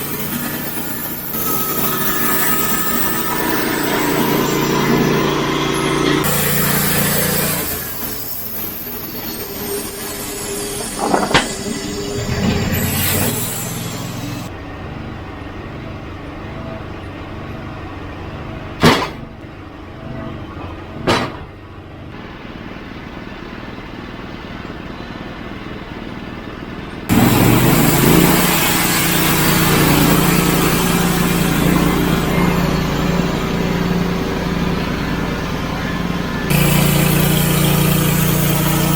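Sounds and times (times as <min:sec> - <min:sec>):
sawmill engine running: 0:00.0 - 0:38.9
sharp knocks: 0:18.8 - 0:19.2, 0:21.0 - 0:21.5.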